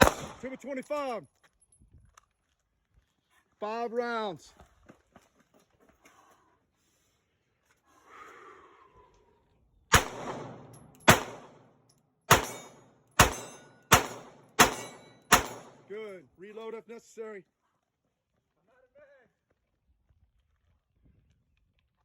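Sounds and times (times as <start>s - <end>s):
gunshots with ringing echo: 0.0s - 0.5s, 9.9s - 11.7s, 12.3s - 16.0s.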